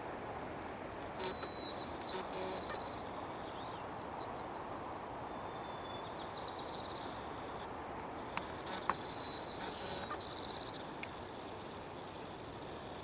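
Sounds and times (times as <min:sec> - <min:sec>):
songbird whistling and trilling: 0:08.0 - 0:10.8.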